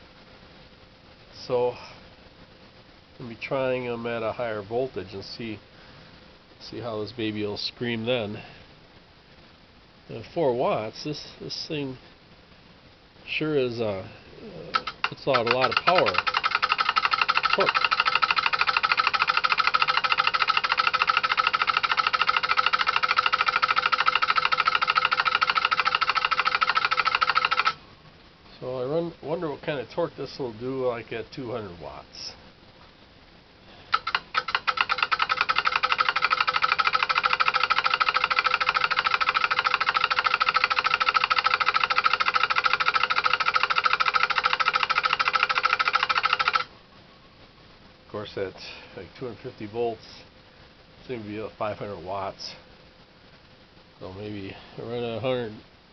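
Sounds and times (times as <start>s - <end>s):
faint steady motor hum: 0.0s - 55.9s
relays clicking rapidly: 14.4s - 27.8s, 33.9s - 46.7s.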